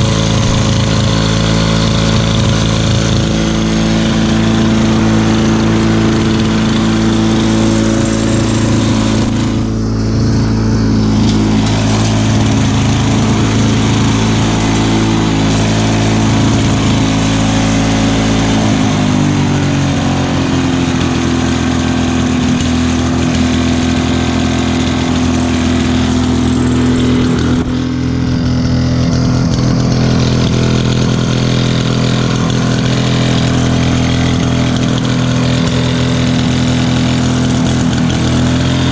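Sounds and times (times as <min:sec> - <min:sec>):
lawn mower engine running: 0:00.0 - 0:38.9.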